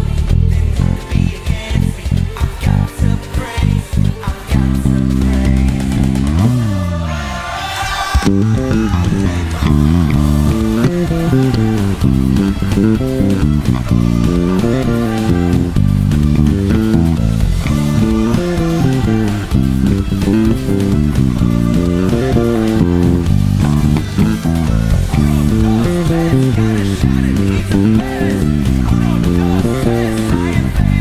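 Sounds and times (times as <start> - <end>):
electric bass guitar line: 0.0 - 7.4, 8.2 - 31.0
band music with steady beat: 9.4 - 31.0.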